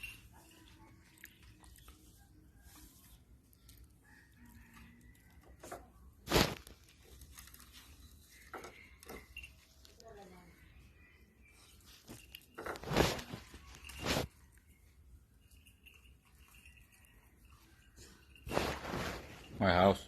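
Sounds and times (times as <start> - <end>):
puppies chewing and crunching: 0.0 - 2.1, 6.2 - 10.0.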